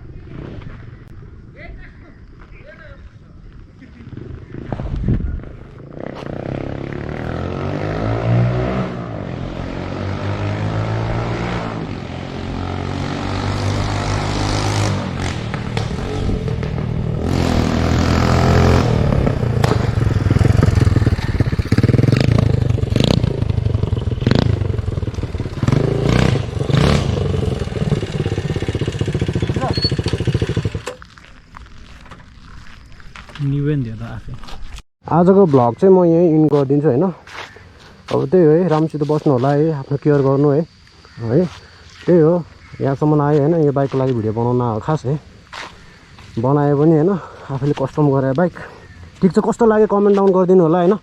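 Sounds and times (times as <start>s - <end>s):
motorcycle engine revving: 5.6s - 31.0s
motorcycle throttle blips: 18.7s - 31.0s.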